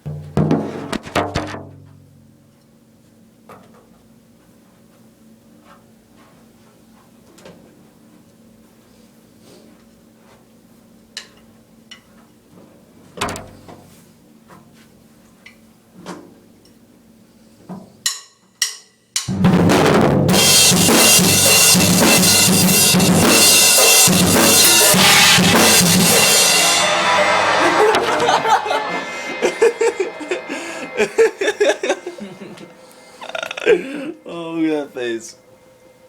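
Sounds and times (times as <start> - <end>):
drum kit playing rapid beats: 18.0 - 32.1.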